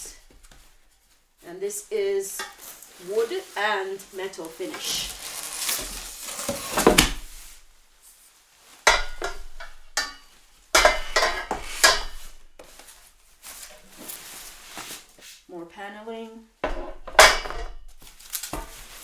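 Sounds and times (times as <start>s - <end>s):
packaging rustling and scraping: 0.0s - 15.5s, 16.8s - 19.0s
metal and wood pieces clattering: 16.6s - 19.0s.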